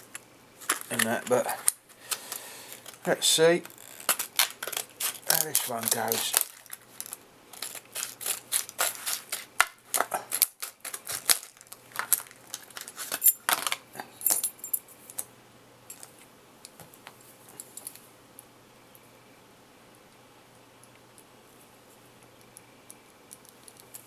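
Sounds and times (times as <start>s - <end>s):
metallic clinks of lock-picking tools: 14.2s - 14.9s.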